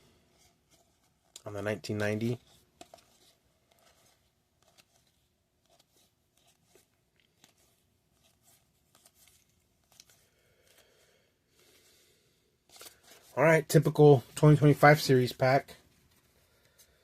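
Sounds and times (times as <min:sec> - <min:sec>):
trading cards clicking and rustling: 0:00.7 - 0:11.0, 0:12.7 - 0:13.3.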